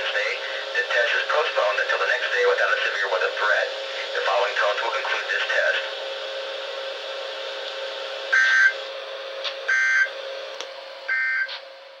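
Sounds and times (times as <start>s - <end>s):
radio hiss: 0.0s - 6.0s.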